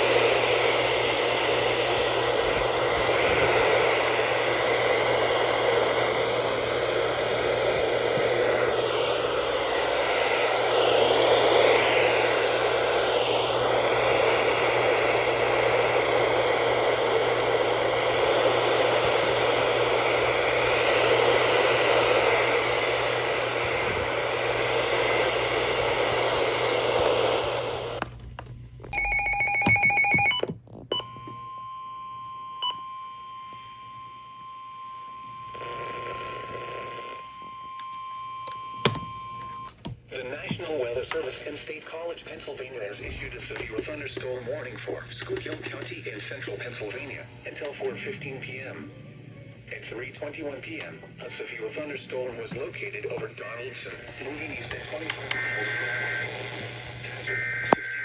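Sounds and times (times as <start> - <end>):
radio static hiss: 0.0 - 28.1, 34.9 - 37.5, 40.1 - 48.8, 49.7 - 58.0
steady warning alarm tone: 28.9 - 39.8.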